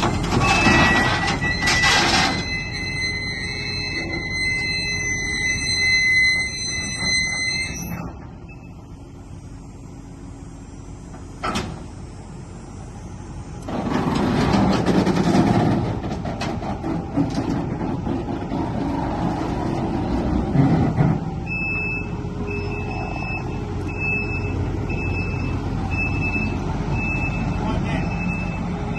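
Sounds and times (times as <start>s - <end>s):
reversing alarm beeping: 0.0s - 13.7s, 20.1s - 28.9s.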